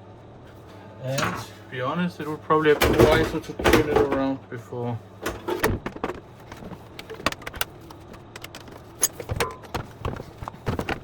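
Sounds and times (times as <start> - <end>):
clicks and knocks of appliance casing: 2.8 - 4.3, 5.2 - 11.0.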